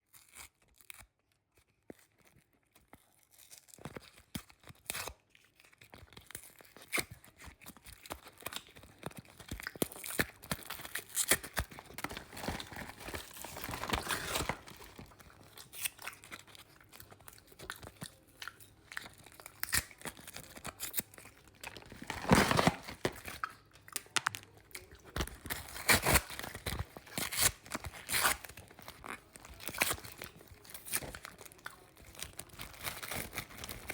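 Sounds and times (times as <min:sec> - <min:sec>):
flatbread tearing and crunching: 0:00.0 - 0:33.9
chewing: 0:07.6 - 0:21.9.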